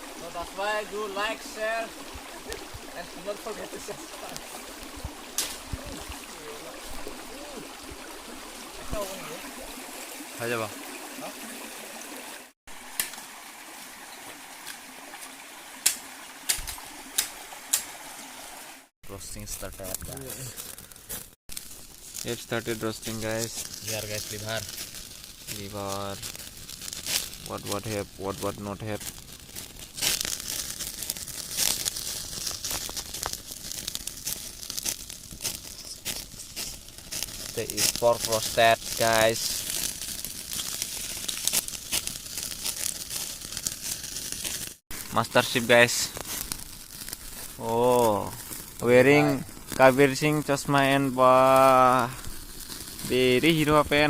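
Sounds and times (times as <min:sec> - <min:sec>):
wood fire crackling: 0:00.0 - 0:12.1, 0:12.7 - 0:54.0
stream rushing by waterfall: 0:00.0 - 0:18.9.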